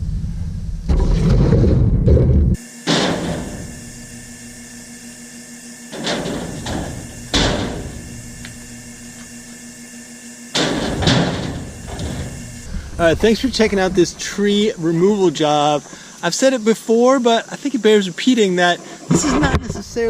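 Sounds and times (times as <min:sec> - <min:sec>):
sharp thumps: 0:00.8 - 0:05.0, 0:05.9 - 0:16.2
faint steady hum: 0:02.5 - 0:20.0.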